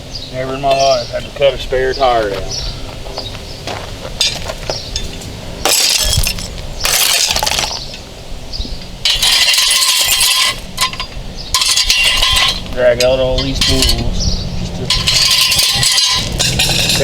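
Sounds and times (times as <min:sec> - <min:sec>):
metal tools clinking and rattling: 0:04.2 - 0:08.0, 0:09.0 - 0:17.0.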